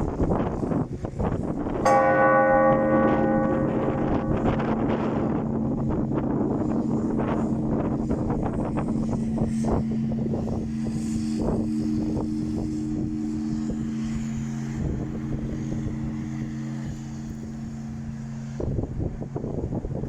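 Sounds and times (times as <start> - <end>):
wind buffeting microphone: 0.0 - 20.0
large church bell ringing: 1.6 - 20.0.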